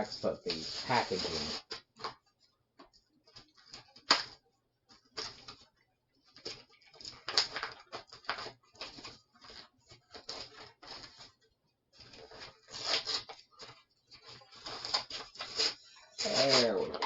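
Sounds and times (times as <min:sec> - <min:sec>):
plastic packaging crinkling: 0:02.8 - 0:11.4, 0:12.0 - 0:17.0.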